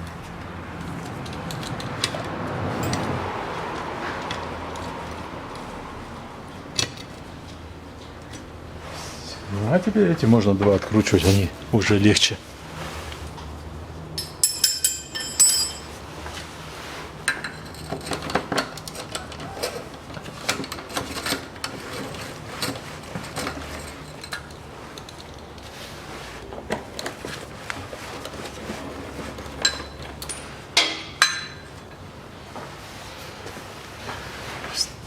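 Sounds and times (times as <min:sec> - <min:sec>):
wrench clinking on metal: 0:14.2 - 0:15.9.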